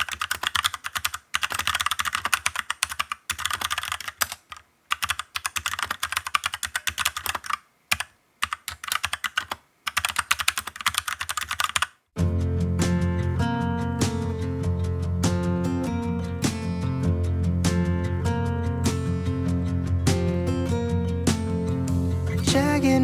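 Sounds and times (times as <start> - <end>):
mechanical keyboard key clacks: 0.0 - 12.0.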